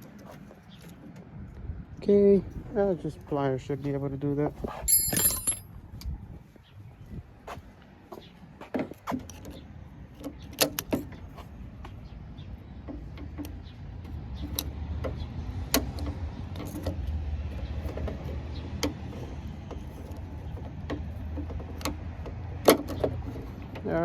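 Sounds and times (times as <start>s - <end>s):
pliers metallic clicks and knocks: 4.9s - 5.6s.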